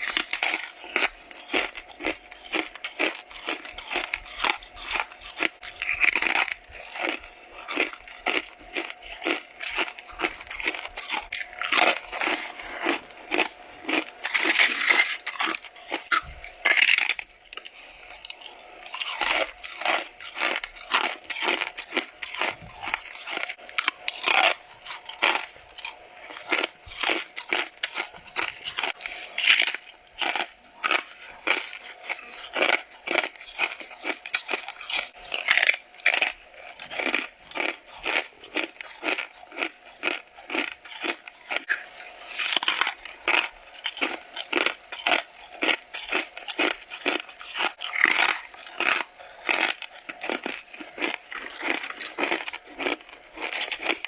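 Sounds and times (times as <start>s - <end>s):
chewing frost crunches: 0.0s - 54.0s.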